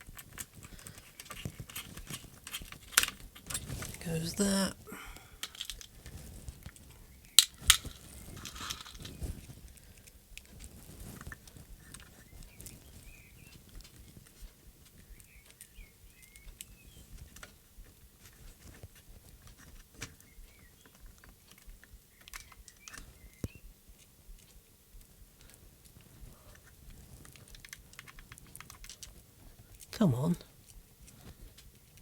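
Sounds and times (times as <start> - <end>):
small plastic parts clicking: 0.0 - 4.0, 5.4 - 10.6, 22.2 - 23.6, 25.4 - 29.2.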